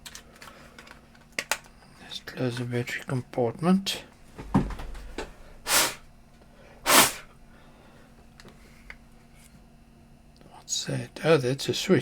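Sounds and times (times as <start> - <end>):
short sharp puffs of air: 5.6 - 6.1, 6.8 - 7.3.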